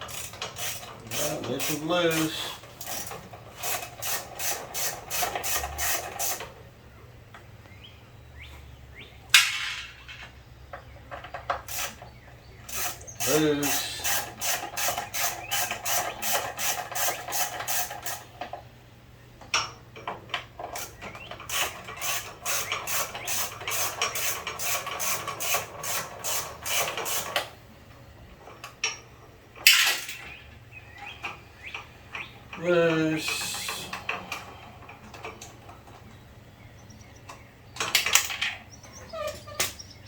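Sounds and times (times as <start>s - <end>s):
ratchet wrench clicking: 0.1s - 6.4s, 11.7s - 12.0s, 12.7s - 18.2s, 21.5s - 27.4s.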